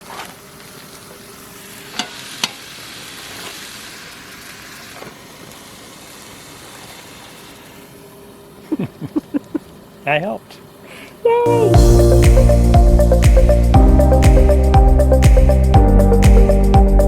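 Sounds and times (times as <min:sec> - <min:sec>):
food sizzling in a pan: 0:00.0 - 0:08.0.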